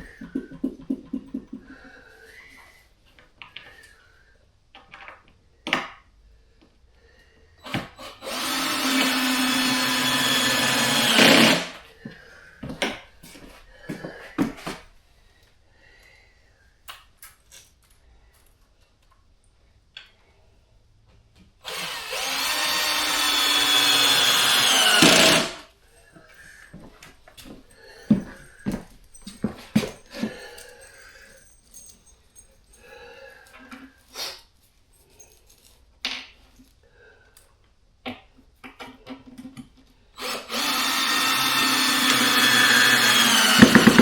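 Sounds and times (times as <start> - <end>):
drill driving screws: 7.6 - 11.8, 21.6 - 25.7, 40.2 - 44.0.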